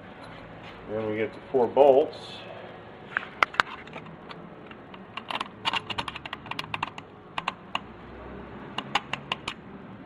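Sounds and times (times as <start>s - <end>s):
metallic clicks of bolts: 5.0s - 7.9s, 8.8s - 9.6s.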